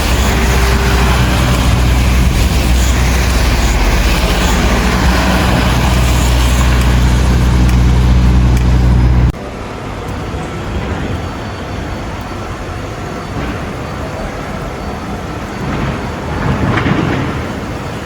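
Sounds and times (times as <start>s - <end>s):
vehicle engine rumbling: 0.0s - 9.4s
street traffic noise: 0.0s - 18.0s.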